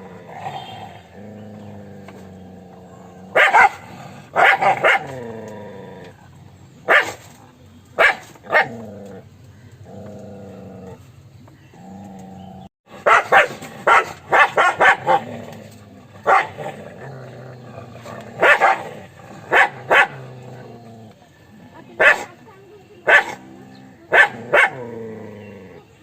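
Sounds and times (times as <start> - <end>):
dog barking: 3.3 - 5.2, 6.9 - 7.2, 8.0 - 8.8, 13.0 - 15.3, 16.2 - 16.7, 18.4 - 18.9, 19.5 - 20.2, 22.0 - 22.4, 23.0 - 23.4, 24.1 - 24.9.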